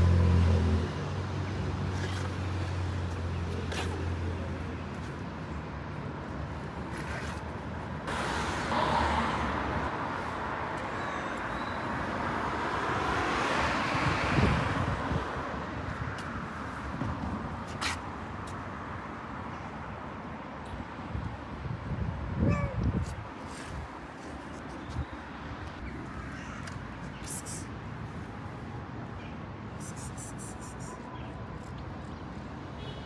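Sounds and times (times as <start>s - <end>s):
vehicle passing by: 0.0s - 4.8s, 8.1s - 15.5s.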